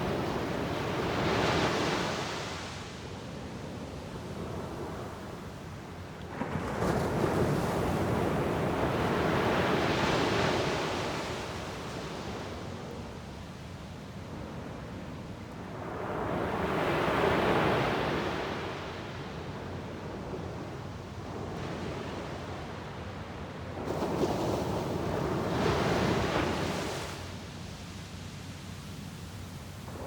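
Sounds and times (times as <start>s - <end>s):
waves surging onto shore: 23.7s - 30.0s.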